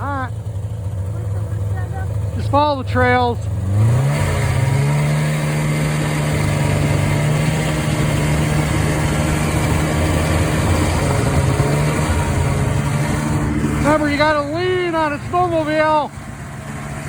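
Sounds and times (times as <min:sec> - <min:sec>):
snowmobile two-stroke engine running: 0:00.0 - 0:17.0
rushing wind and track noise: 0:03.6 - 0:17.0.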